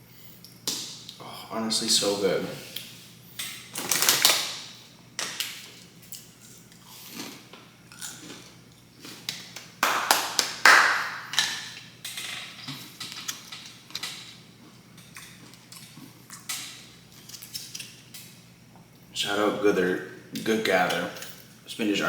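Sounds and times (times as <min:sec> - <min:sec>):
eating sounds: 0:12.6 - 0:17.5.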